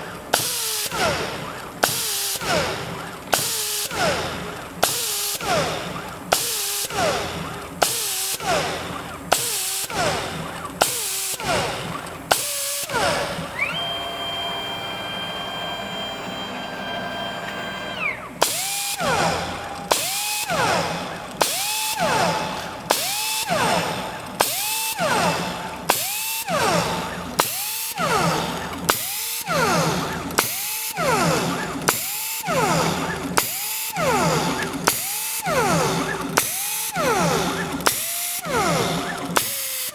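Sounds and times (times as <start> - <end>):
drill spindle grinding steel: 10.9 - 39.9
steady machine whine: 12.8 - 37.9.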